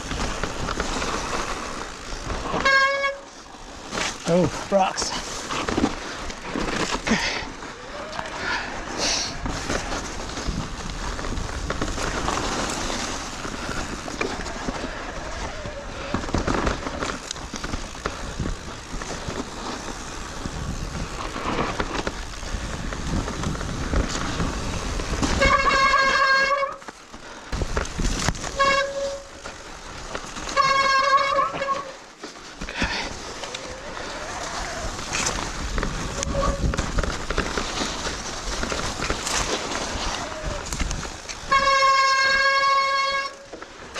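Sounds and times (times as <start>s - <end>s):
bike riding on snowy trail: 0.0s - 43.9s.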